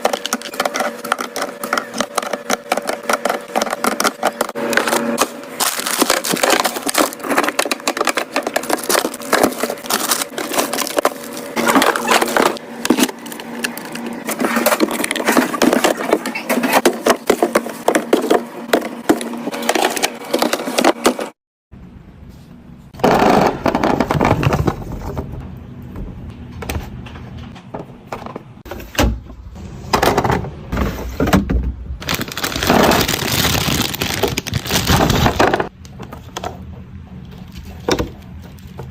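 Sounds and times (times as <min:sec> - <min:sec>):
plastic packaging clicks and rustles: 0:00.0 - 0:18.4, 0:32.0 - 0:35.7.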